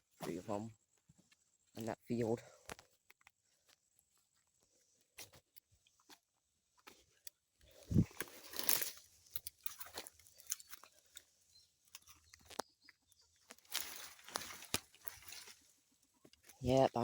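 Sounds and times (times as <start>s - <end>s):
footsteps through dry brush: 7.7s - 11.2s, 13.4s - 16.6s.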